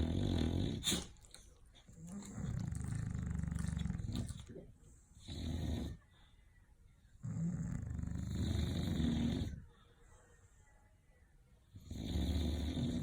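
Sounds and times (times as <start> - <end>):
dog snoring: 0.0 - 1.0, 2.0 - 4.4, 5.2 - 6.0, 7.2 - 9.6, 11.8 - 13.0.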